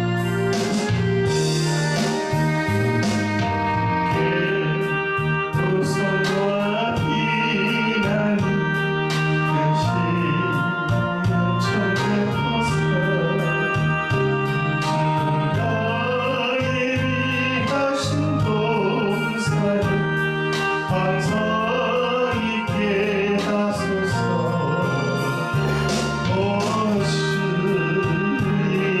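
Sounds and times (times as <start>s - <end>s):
electronic organ chords: 0.0s - 29.0s
steady percussion beat: 0.3s - 3.6s, 24.6s - 28.8s
person singing gospel song: 3.6s - 29.0s.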